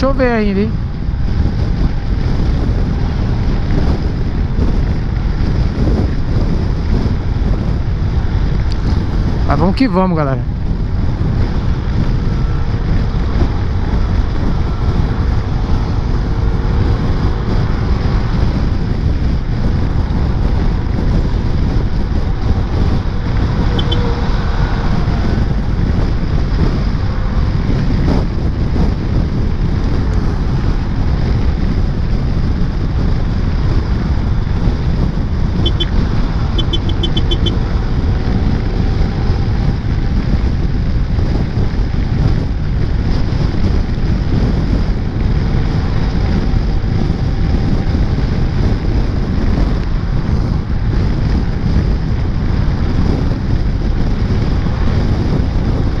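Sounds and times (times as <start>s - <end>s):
wind on helmet microphone: 0.0s - 56.0s
motor scooter engine running: 10.6s - 56.0s
short high beeps: 23.8s - 24.0s, 35.6s - 35.9s, 36.6s - 37.6s.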